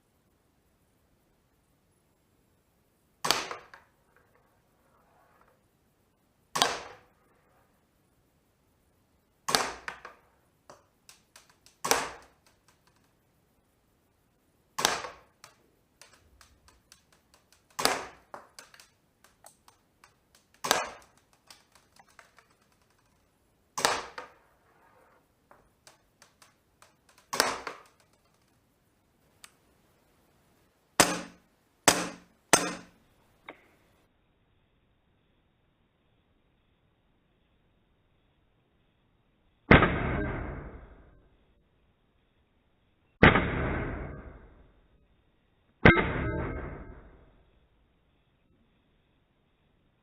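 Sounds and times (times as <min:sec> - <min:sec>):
airsoft pistol shots: 0:03.2 - 0:03.8, 0:06.5 - 0:07.1, 0:09.5 - 0:10.2, 0:11.4 - 0:12.5, 0:14.8 - 0:16.2, 0:17.5 - 0:18.9, 0:20.5 - 0:22.6, 0:23.8 - 0:24.4, 0:27.1 - 0:28.0, 0:31.0 - 0:33.0, 0:39.7 - 0:41.0, 0:43.2 - 0:44.6.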